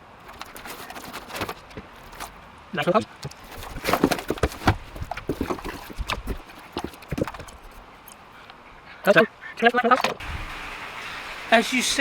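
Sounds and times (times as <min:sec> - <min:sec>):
knocks and clatter of pump parts: 0:00.2 - 0:02.4, 0:03.1 - 0:07.8.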